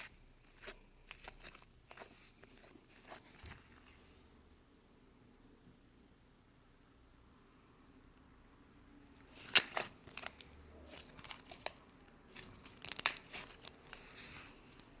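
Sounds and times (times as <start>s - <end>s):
slime squished with sticky pops: 9.2s - 14.2s.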